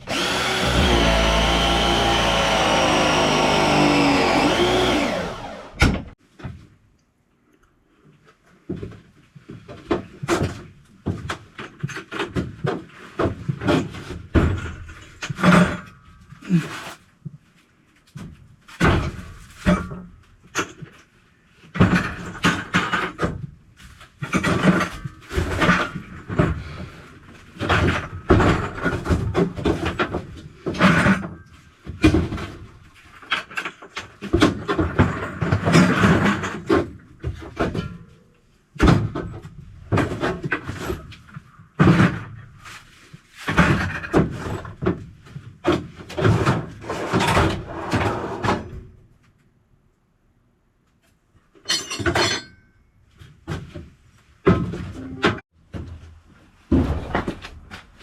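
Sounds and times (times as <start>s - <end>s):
tools and parts clanking: 51.5s - 53.8s.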